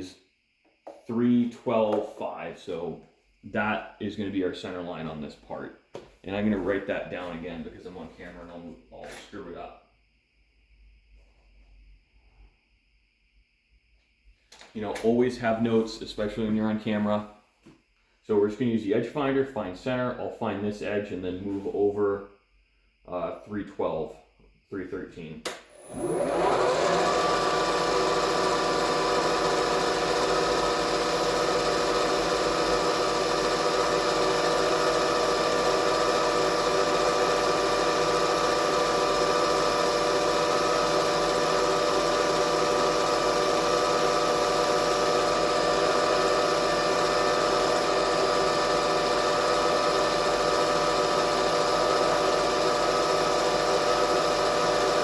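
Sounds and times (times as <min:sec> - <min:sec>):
milling machine spindle hum: 0:25.7 - 0:55.0.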